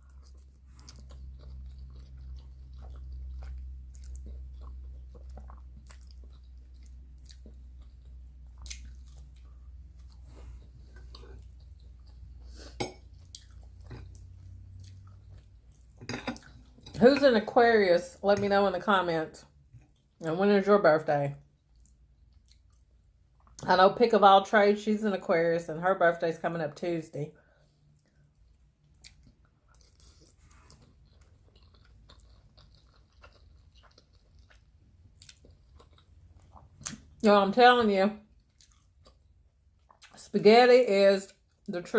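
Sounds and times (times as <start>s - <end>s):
person chewing food: 0.0s - 17.0s, 19.6s - 20.3s, 21.4s - 23.6s, 27.5s - 37.2s, 38.3s - 40.2s
low steady hum: 0.0s - 41.9s.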